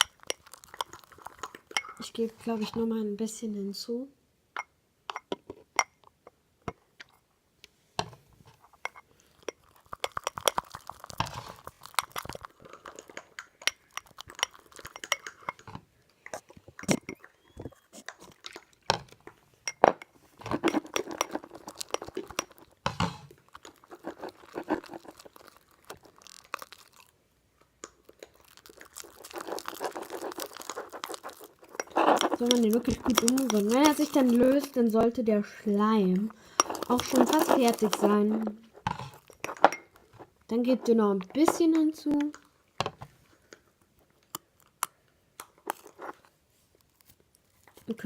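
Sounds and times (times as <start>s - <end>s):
utensil scraping against bowl: 20.4s - 25.4s, 29.0s - 39.8s.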